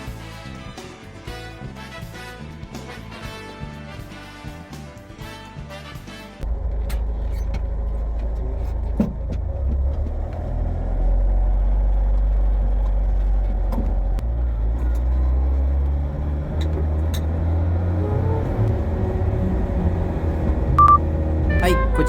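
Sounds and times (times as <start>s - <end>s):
small truck engine running: 6.4s - 22.0s.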